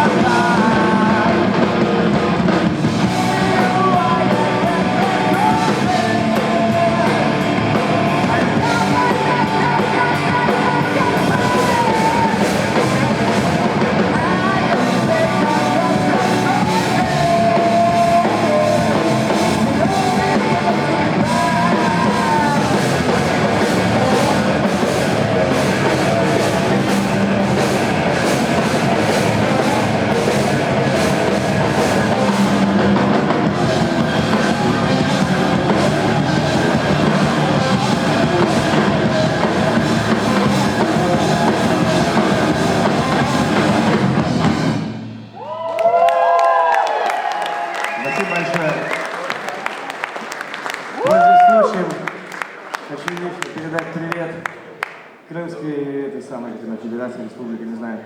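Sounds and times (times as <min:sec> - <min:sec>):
person singing: 0:00.0 - 0:02.2, 0:02.9 - 0:44.3
drum kit: 0:00.0 - 0:45.6
bass guitar: 0:00.0 - 0:45.7
guitar: 0:00.0 - 0:46.0.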